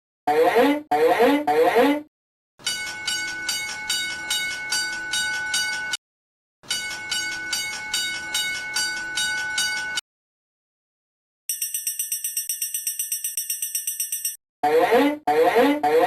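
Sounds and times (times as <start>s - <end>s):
railroad crossing bell ringing: 2.7s - 6.0s, 6.7s - 10.0s, 11.5s - 14.4s.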